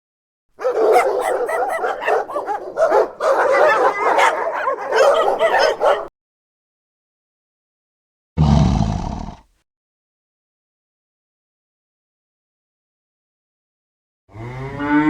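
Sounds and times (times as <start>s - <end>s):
dog barking and yipping: 0.6s - 6.1s.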